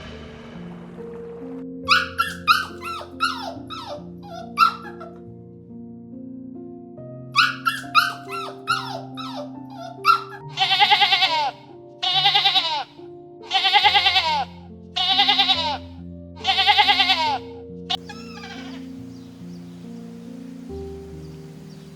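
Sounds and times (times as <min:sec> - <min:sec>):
background music: 0:00.0 - 0:21.9
dog yelping: 0:01.9 - 0:05.2, 0:07.4 - 0:12.9, 0:16.4 - 0:18.9
goat bleating: 0:10.5 - 0:15.8, 0:16.4 - 0:17.4, 0:18.0 - 0:18.9.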